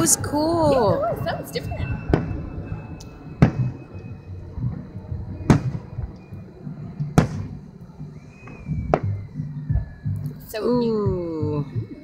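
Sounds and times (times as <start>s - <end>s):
fireworks bursting: 0.0s - 10.4s.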